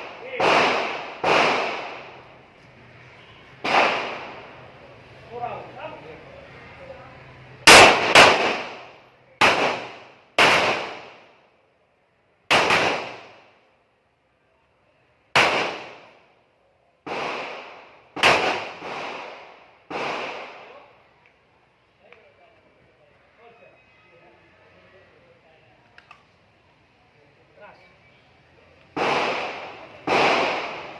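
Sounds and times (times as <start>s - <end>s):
handgun shots with echo: 29.0s - 30.9s.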